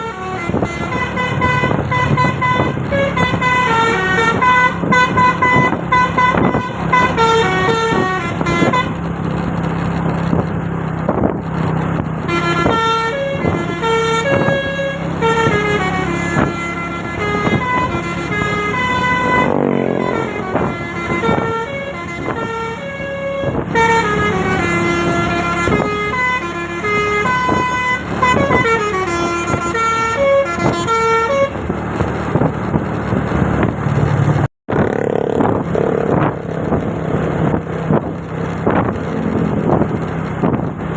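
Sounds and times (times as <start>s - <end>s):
bus horn playing melodies: 0.0s - 9.2s, 12.2s - 32.0s
bus engine humming: 0.0s - 40.9s.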